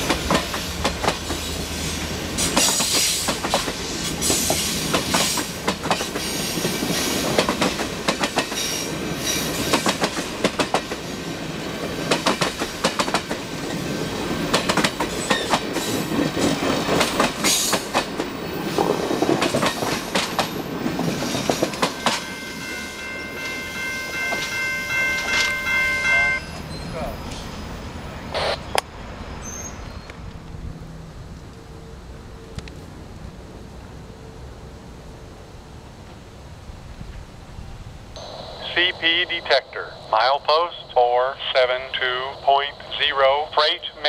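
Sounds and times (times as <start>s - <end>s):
train wheels clacking over rail joints: 0.0s - 1.6s, 2.4s - 11.0s, 12.0s - 22.3s
train rumble: 0.0s - 44.0s
train horn: 21.8s - 26.5s.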